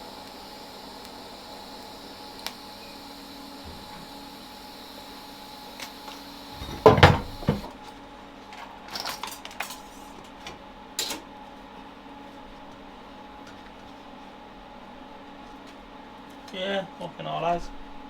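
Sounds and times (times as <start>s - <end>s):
metal clanking and clattering: 6.6s - 7.7s.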